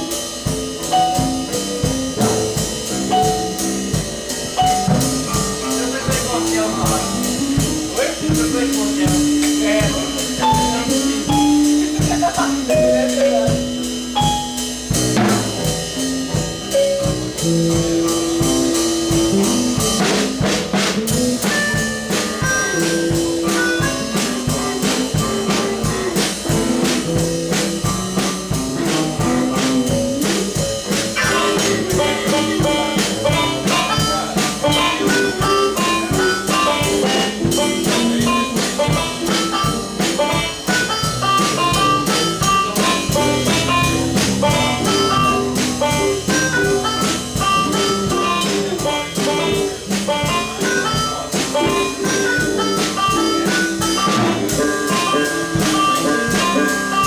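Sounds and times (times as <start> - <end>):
band playing jazzy rock: 0.0 - 57.0
drum kit: 0.0 - 57.0.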